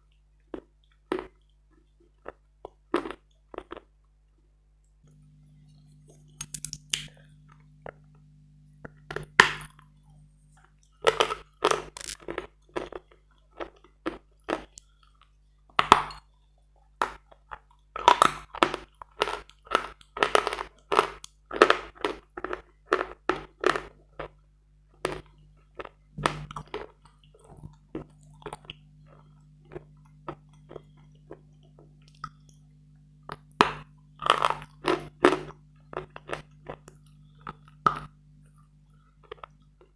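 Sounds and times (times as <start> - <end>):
faint low hum: 0.0 - 39.9
crunching chews of chalk: 0.6 - 1.4, 2.2 - 3.9, 6.1 - 7.1, 10.6 - 16.2, 17.0 - 24.4, 25.0 - 32.6, 33.3 - 39.9.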